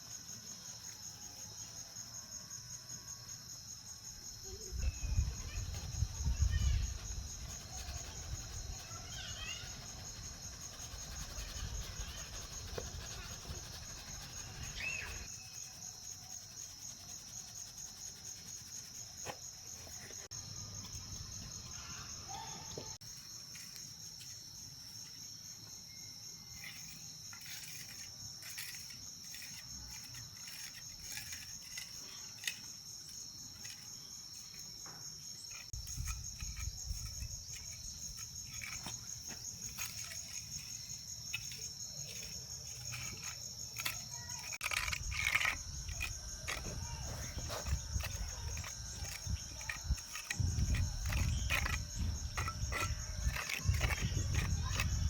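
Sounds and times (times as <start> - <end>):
insects chorus: 0.0 - 55.0.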